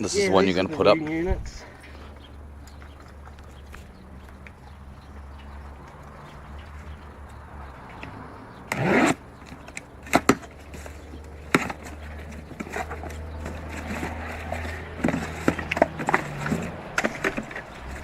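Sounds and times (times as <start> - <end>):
equipment knocks and scrape: 9.6 - 18.0.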